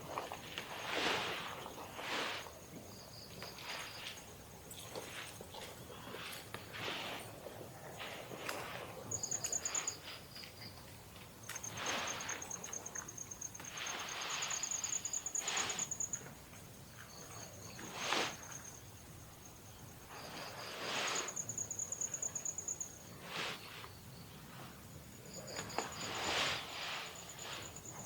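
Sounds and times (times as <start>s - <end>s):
insect trilling: 11.6s - 16.2s.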